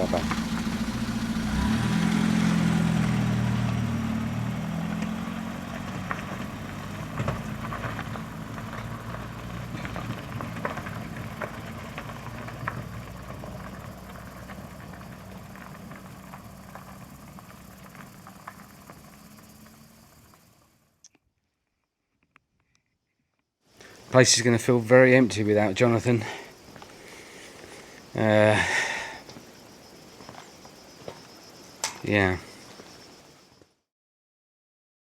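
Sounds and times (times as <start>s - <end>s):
car engine pulling away: 0.0s - 21.0s.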